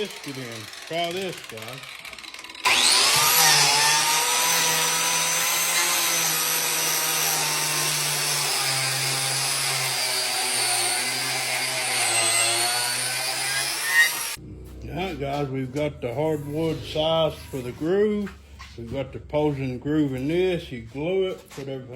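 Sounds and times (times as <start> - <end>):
power tool whining: 0.0 - 14.4
wood being cut: 0.0 - 21.9.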